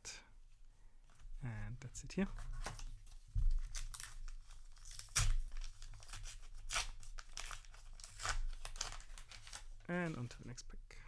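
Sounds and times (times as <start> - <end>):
plastic wrapper crinkling and tearing: 2.4 - 10.5.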